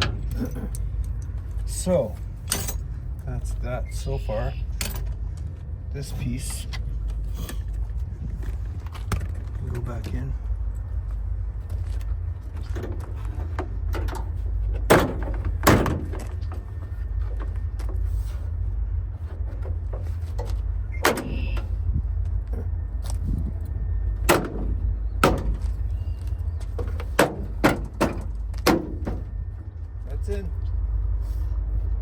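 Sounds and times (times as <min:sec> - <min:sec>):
steady low rumble: 0:00.0 - 0:32.0
door lock clicks and knocks: 0:26.8 - 0:29.2.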